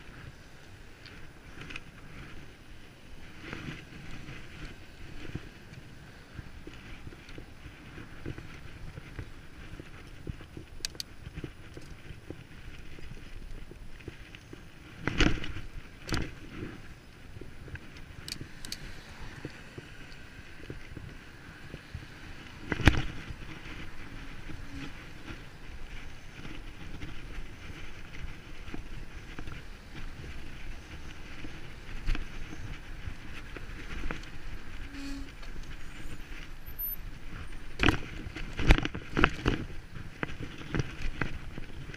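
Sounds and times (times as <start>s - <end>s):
bicycle tyres rumbling on rough ground: 0.0s - 41.9s.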